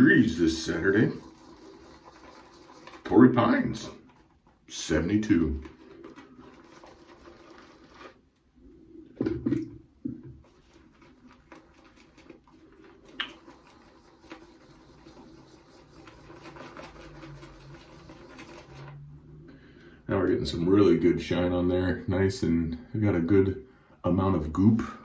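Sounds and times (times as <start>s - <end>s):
shaving brush swishing lather: 0.0s - 8.4s, 10.4s - 19.2s.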